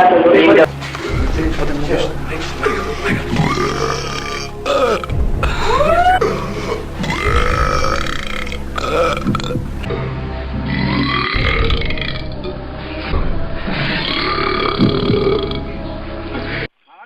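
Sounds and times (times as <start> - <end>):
men belching loudly: 0.6 - 9.9, 10.6 - 12.3.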